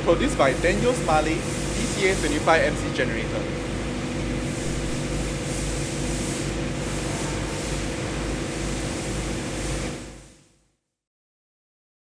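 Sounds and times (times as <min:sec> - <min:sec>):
diesel generator humming: 0:00.0 - 0:05.2.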